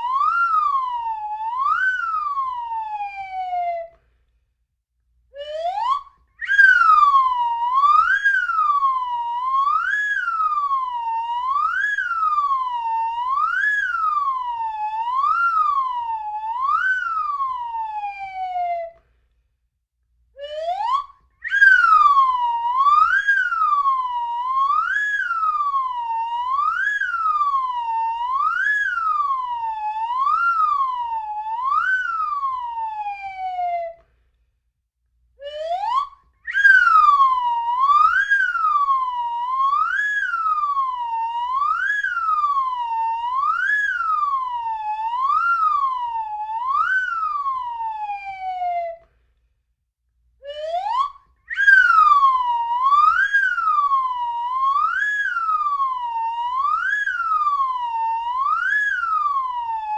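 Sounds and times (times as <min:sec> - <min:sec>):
slide whistle swooping: 0:05.4 - 0:17.9, 0:20.4 - 0:29.4, 0:30.0 - 0:32.9, 0:35.4 - 0:47.9, 0:50.4 - 0:59.9.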